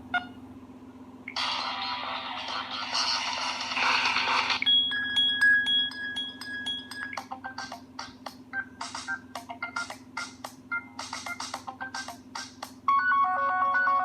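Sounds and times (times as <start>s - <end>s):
hissy ringtone: 4.6s - 7.9s
ringtone with clicking notes: 4.6s - 14.0s.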